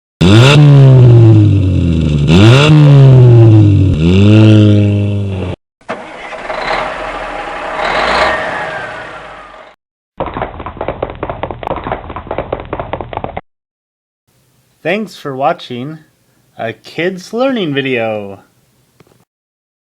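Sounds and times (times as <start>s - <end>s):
noisy vehicle with whine: 0.2s - 9.8s
vehicle engine revving: 0.2s - 9.8s.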